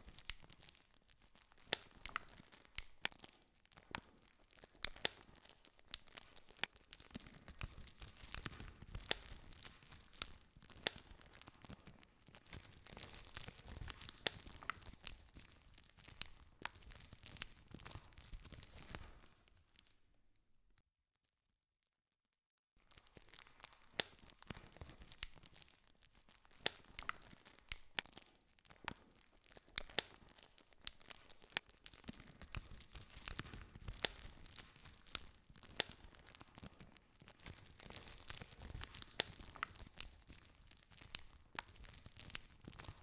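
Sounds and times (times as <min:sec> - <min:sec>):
campfire crackling and popping: 0:00.0 - 0:19.9, 0:22.8 - 0:43.0
soft fire hissing: 0:04.6 - 0:19.4, 0:30.8 - 0:43.0.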